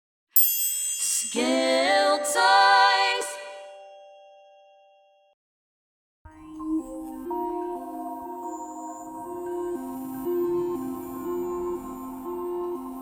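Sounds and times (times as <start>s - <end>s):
bright chime: 0.4s - 5.3s, 6.3s - 13.0s
background music: 6.3s - 13.0s.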